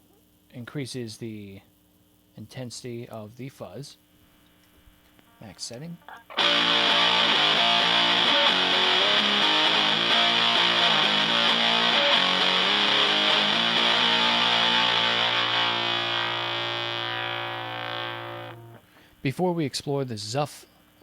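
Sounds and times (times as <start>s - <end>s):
fuzzed electric guitar riff: 6.2s - 19.0s.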